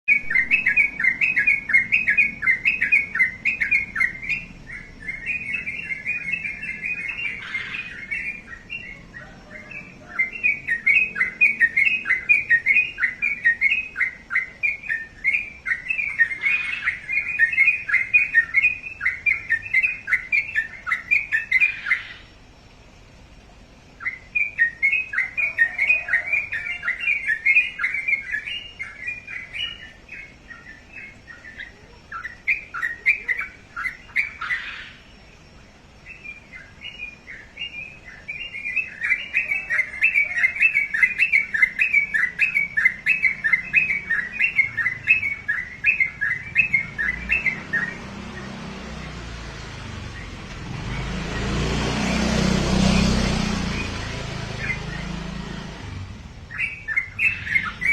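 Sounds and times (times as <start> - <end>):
songbird chirping: 0.0 - 57.9
broad rushing noise: 41.9 - 57.9.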